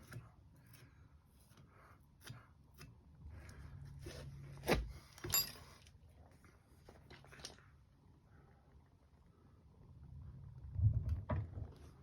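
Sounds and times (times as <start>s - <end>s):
metallic clink with ring: 5.2s - 5.8s.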